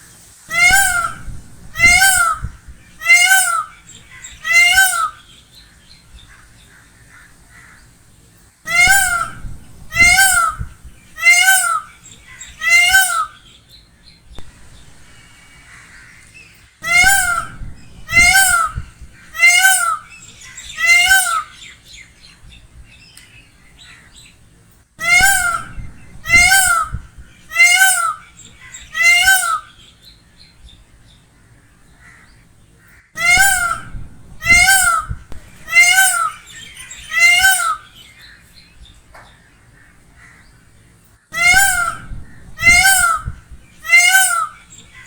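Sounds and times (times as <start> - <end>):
peacock wailing: 0.5 - 5.3, 8.7 - 13.4, 14.4 - 16.2, 16.8 - 22.7, 25.0 - 29.9, 31.5 - 38.5, 41.4 - 45.0
faint chirps: 14.3 - 16.4.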